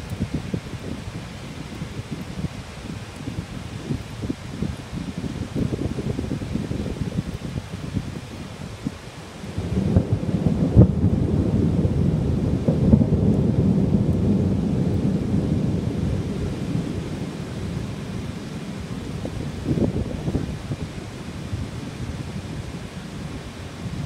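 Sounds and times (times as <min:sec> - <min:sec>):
heavy rain: 0:00.0 - 0:24.0
thunder rolling: 0:09.6 - 0:18.2.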